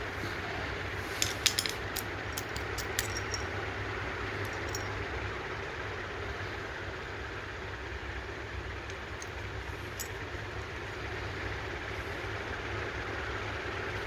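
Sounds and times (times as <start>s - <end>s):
steady low hum: 0.0s - 14.0s
metal tools clinking: 1.0s - 3.7s, 4.3s - 5.0s, 8.9s - 10.3s.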